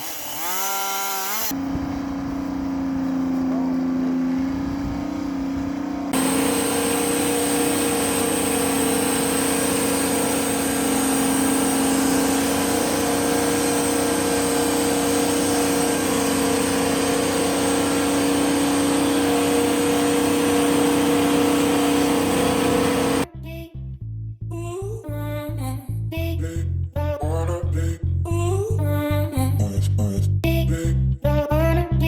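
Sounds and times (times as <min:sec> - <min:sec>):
sawmill running: 0:00.0 - 0:23.3.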